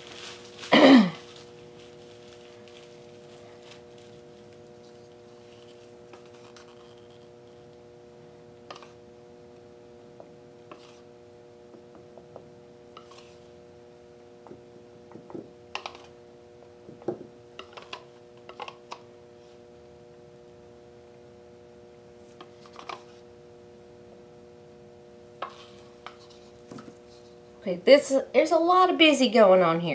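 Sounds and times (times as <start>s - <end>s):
bubble wrap crinkling in paint: 0.0s - 7.8s, 25.4s - 27.4s
steady hum: 0.0s - 29.9s.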